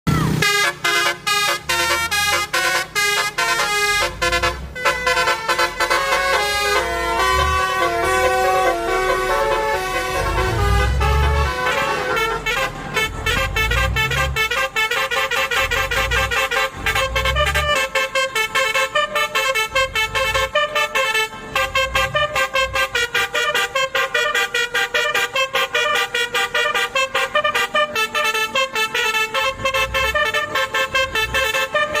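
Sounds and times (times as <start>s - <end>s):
musical bus horn playing tune: 0.1s - 32.0s.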